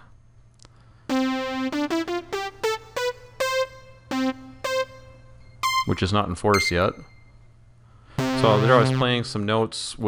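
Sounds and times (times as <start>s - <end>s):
analog synthesizer notes: 1.1s - 7.3s, 8.2s - 9.4s.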